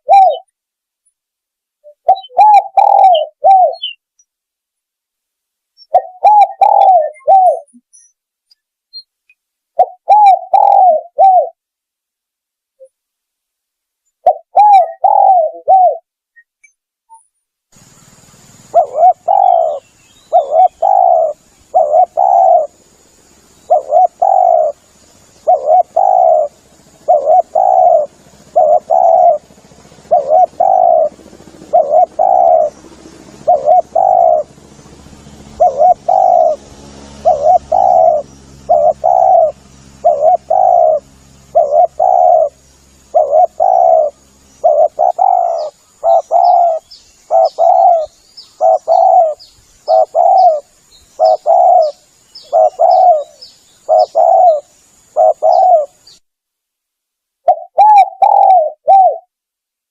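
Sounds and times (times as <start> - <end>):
dove cooing: 0.0 - 0.5, 1.8 - 4.0, 5.8 - 7.8, 9.8 - 11.6, 14.2 - 16.1, 18.6 - 22.8, 23.4 - 34.6, 35.5 - 56.2, 57.4 - 59.3.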